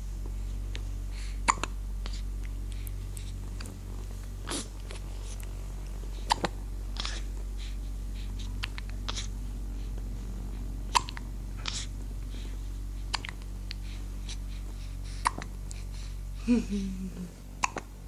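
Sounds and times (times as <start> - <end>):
steady low hum: 0.0 - 18.0
baby hiccuping: 1.5 - 1.7, 10.9 - 11.8.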